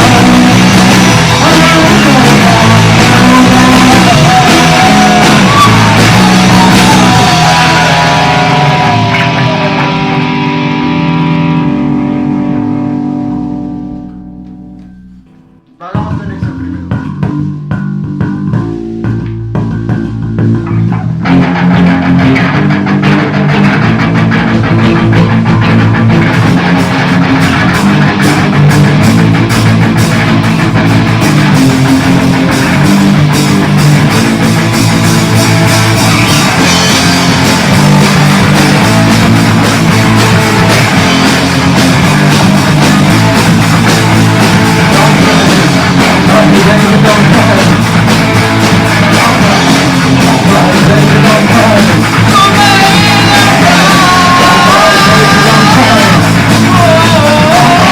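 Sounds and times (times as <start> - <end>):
person singing: 0.0 - 10.8, 44.0 - 57.9
punk rock band playing: 0.0 - 57.9.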